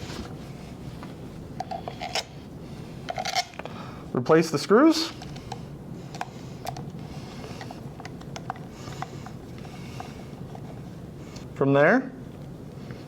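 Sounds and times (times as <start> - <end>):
low steady hum: 0.0 - 13.0.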